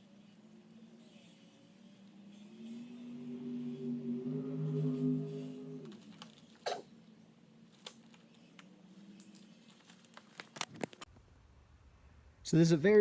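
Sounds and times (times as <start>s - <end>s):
faint low hum: 0.0s - 10.3s
paper rustling: 9.4s - 11.1s.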